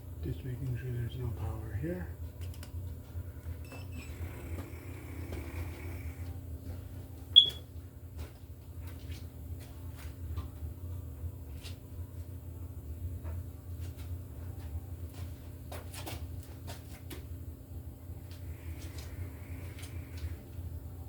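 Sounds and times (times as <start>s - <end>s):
steady low hum: 0.0s - 21.0s
voltage tester beep: 7.4s - 7.6s.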